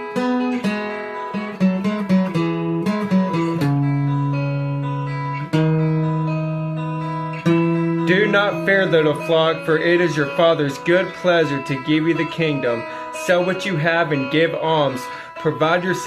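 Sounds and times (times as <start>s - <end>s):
acoustic guitar playing: 0.0s - 16.0s.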